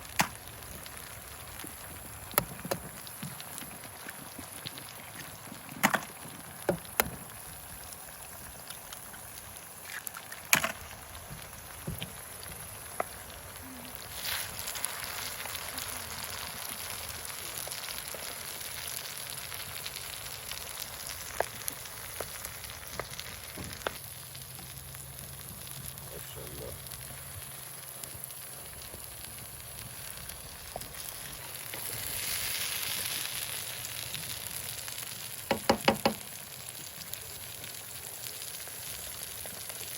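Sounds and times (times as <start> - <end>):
food sizzling in a pan: 0.0 - 39.9
sharp clicks and knocks: 2.3 - 3.4, 5.8 - 7.3, 35.5 - 36.3.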